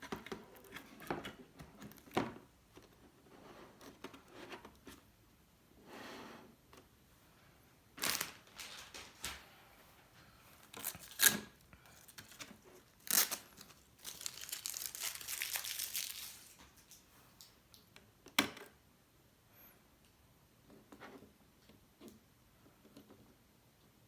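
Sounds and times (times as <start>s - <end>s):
packaging rustling: 8.0s - 9.5s, 10.7s - 17.0s.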